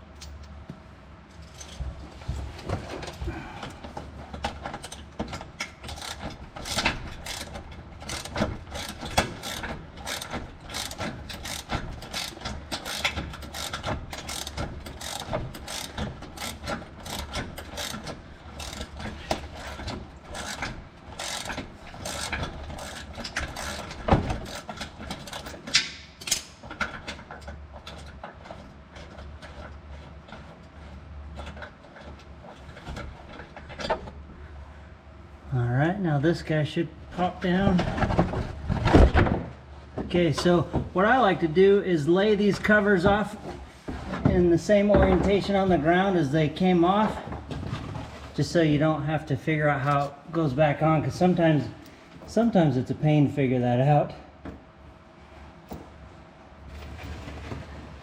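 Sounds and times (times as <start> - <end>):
ratchet wrench clicking: 5.8 - 19.0, 20.3 - 20.6, 21.2 - 23.9.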